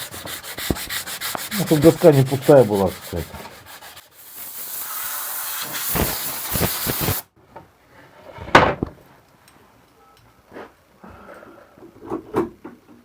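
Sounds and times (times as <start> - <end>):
sandpaper scratching wood: 0.0 - 7.3.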